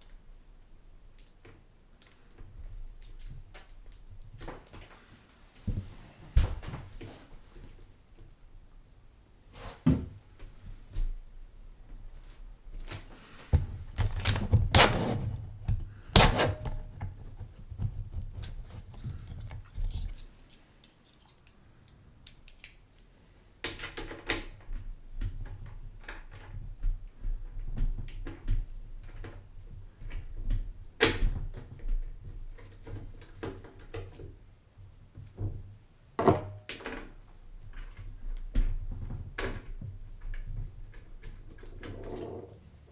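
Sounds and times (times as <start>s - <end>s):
clicks and knocks of hardware: 19.5s - 21.6s.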